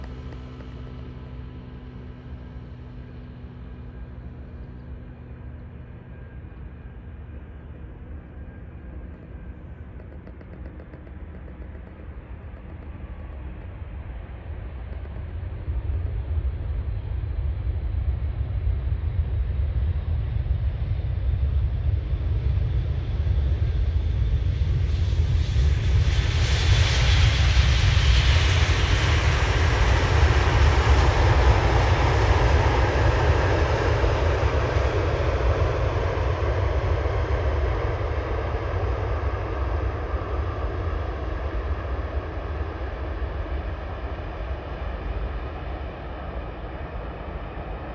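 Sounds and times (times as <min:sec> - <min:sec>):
jet engines rumbling: 0:00.0 - 0:21.0.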